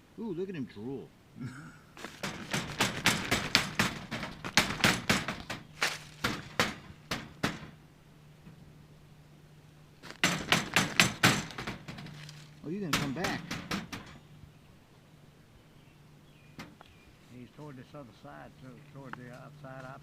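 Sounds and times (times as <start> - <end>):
faint low hum: 0.0 - 20.0
stick knocking on enclosure: 2.0 - 7.7, 10.0 - 14.1.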